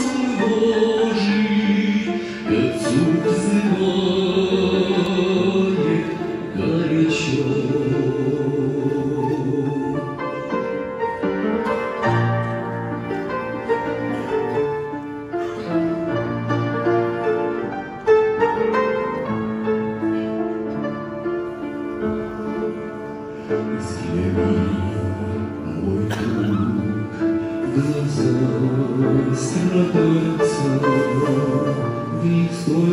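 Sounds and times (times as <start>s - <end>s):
person singing: 0.0s - 10.8s, 22.1s - 32.9s.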